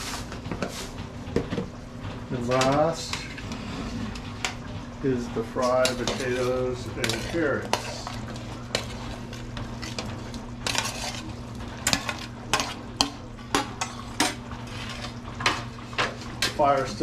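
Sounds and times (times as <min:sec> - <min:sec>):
low steady hum: 0:00.0 - 0:17.0
food sizzling: 0:02.4 - 0:17.0
spoon scraping a pan: 0:05.6 - 0:16.7.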